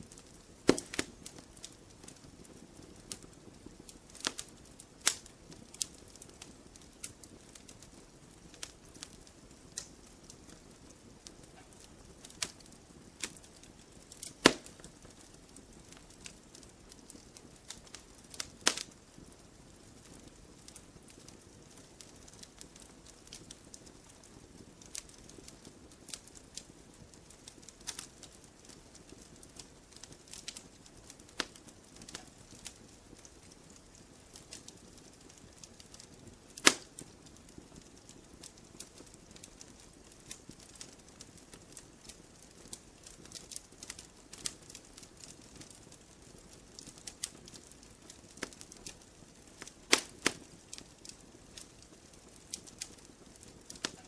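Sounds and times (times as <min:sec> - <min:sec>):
campfire crackling and popping: 0:00.0 - 0:54.0
faint steady hiss: 0:00.0 - 0:54.0.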